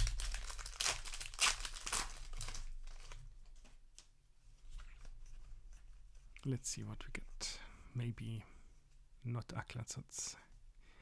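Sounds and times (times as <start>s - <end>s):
foil wrapper tearing and crinkling: 0.0s - 3.2s.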